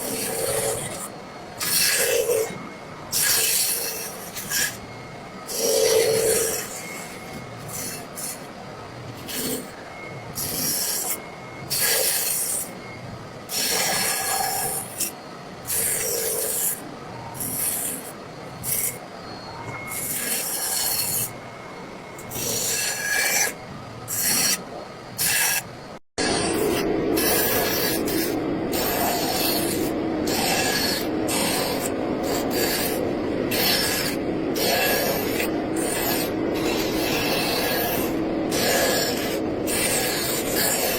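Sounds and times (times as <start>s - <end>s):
carving tool rasping on wood: 0.0s - 4.8s, 5.5s - 8.5s, 9.2s - 9.8s, 13.5s - 16.8s, 17.4s - 19.0s, 19.9s - 21.3s, 22.2s - 24.6s, 25.2s - 25.7s, 26.3s - 40.9s.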